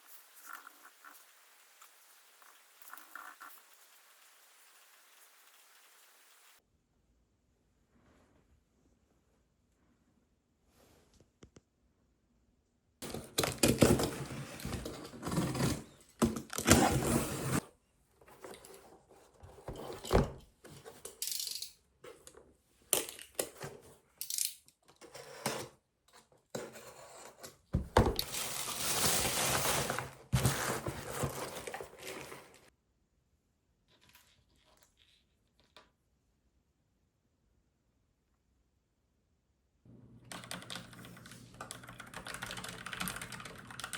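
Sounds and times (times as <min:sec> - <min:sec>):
paper or plastic wrap rustling: 0:28.2 - 0:32.7.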